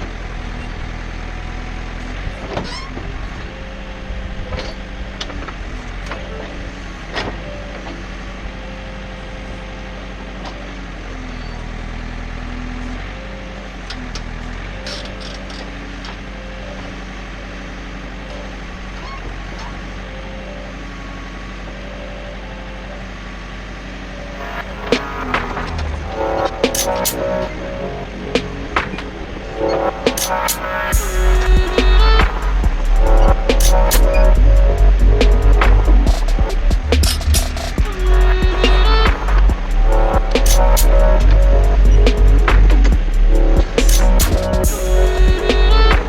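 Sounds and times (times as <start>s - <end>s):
backhoe diesel engine running: 0.0s - 46.0s
short whining tones: 24.4s - 46.0s.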